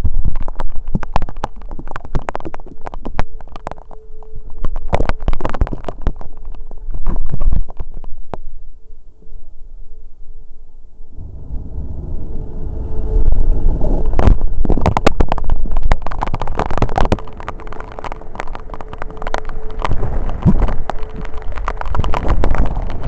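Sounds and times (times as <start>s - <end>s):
crackling rumbling storm: 0.0s - 9.0s, 9.6s - 23.0s
tornado warning siren: 1.2s - 6.8s, 10.9s - 23.0s.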